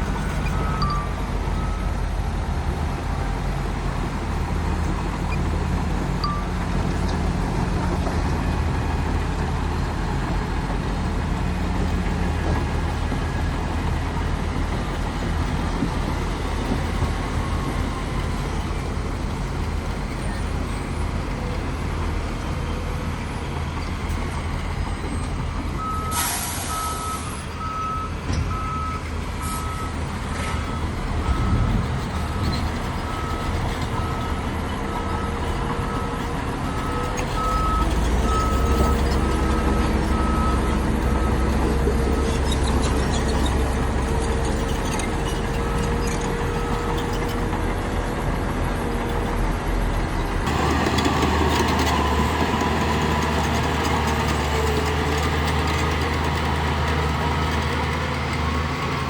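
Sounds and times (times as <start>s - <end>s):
heavy diesel engines running: 0.0s - 59.0s
reversing alarm beeping: 0.3s - 2.0s, 6.1s - 7.4s, 25.8s - 48.8s
air brakes hissing: 26.1s - 27.4s.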